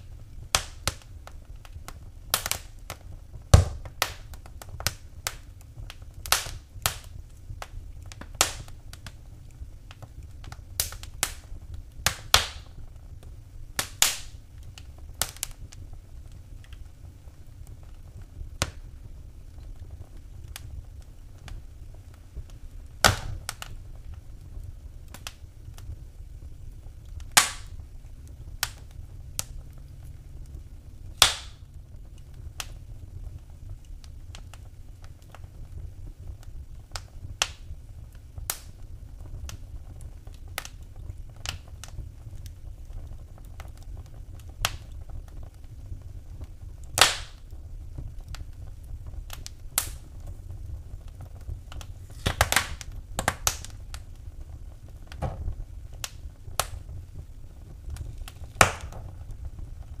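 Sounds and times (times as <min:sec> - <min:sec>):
wood fire crackling: 0:00.0 - 1:00.0.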